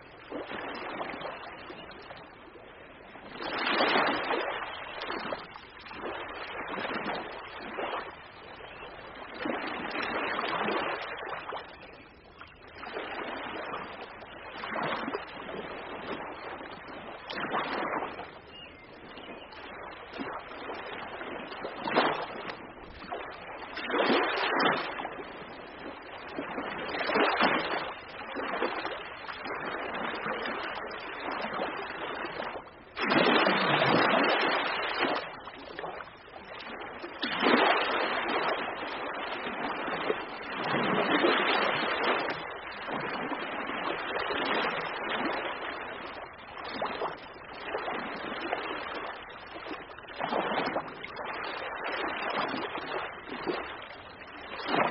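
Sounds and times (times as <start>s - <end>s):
ocean waves breaking: 12.8s - 14.0s, 19.6s - 54.9s.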